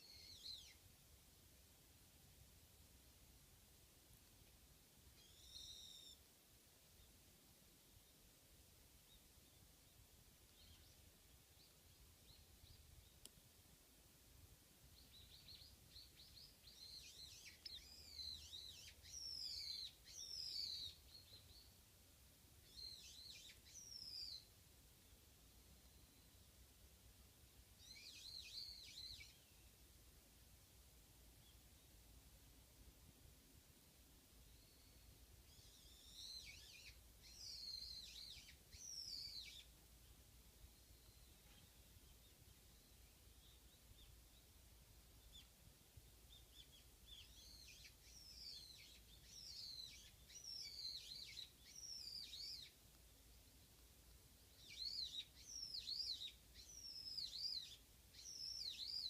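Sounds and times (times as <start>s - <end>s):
bird twittering warble: 0.0s - 0.8s, 5.1s - 6.2s, 15.0s - 21.7s, 22.6s - 24.5s, 27.8s - 29.7s, 34.5s - 44.5s, 46.3s - 52.8s, 54.5s - 59.0s.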